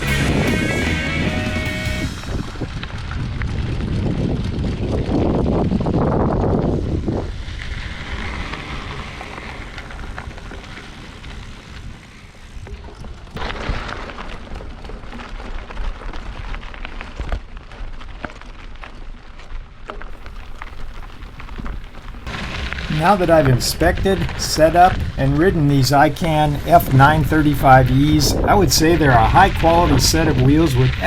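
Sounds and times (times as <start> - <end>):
wind rushing over microphone: 0.0 - 13.5, 20.2 - 31.0
tyres crackling over dirt: 0.0 - 31.0.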